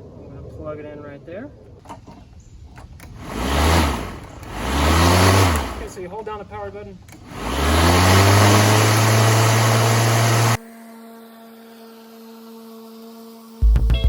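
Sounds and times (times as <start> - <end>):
electric lawn mower running: 3.0 - 6.1, 7.1 - 13.6.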